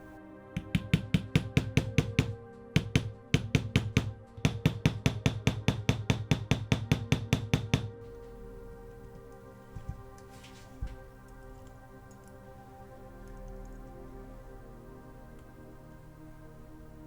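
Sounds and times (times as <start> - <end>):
background music: 0.0 - 17.0
rapid hammer taps: 0.6 - 12.3.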